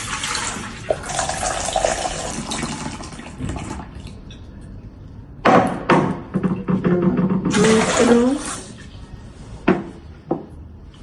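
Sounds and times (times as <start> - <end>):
water running into container: 0.0 - 4.5, 7.4 - 9.0.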